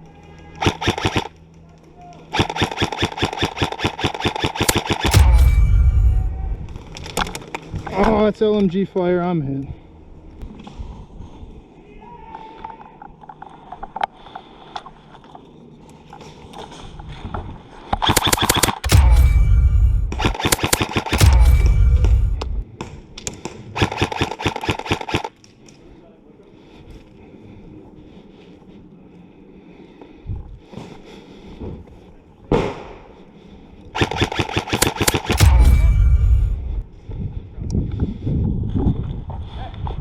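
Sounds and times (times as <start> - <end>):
airsoft gunfire on full auto: 0.6 - 1.3, 2.3 - 5.5, 18.0 - 19.4, 20.1 - 21.7, 23.8 - 25.3, 34.0 - 35.8
loud bang: 4.6 - 7.2, 18.8 - 22.6, 34.8 - 36.9.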